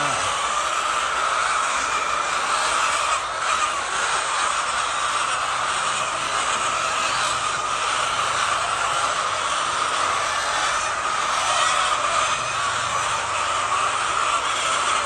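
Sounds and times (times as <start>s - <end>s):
flock of hens calling: 0.0s - 15.0s.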